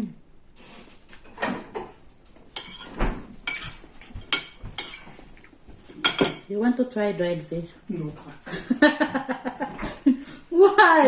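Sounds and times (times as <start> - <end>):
cutlery clinking on a plate: 2.6 - 5.1, 6.0 - 6.5.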